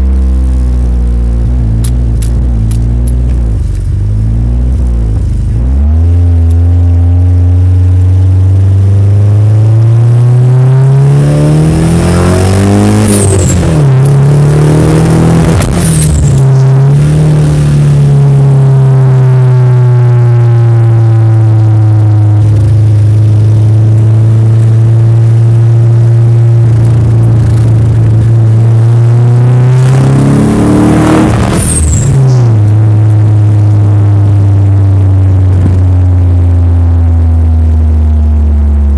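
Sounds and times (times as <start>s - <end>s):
car engine running loud: 0.0s - 38.9s.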